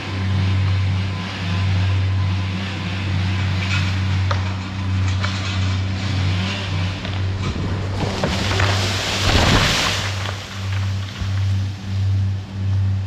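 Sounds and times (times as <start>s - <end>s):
engine running steadily: 0.0s - 13.0s.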